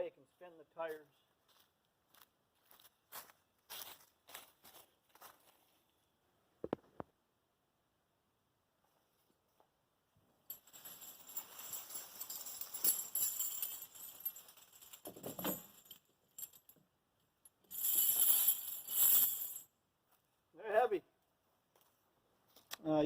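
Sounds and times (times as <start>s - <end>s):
steel chains clinking and jangling: 10.4s - 19.7s.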